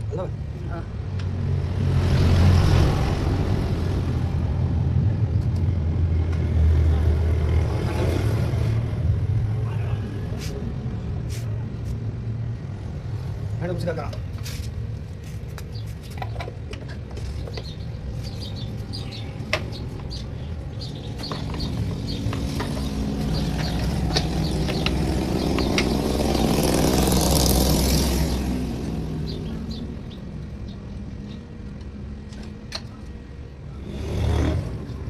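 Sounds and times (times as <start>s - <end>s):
vehicle passing by: 1.3s - 13.6s, 18.0s - 32.2s, 33.6s - 35.0s
high ticks and chirps: 17.5s - 26.7s.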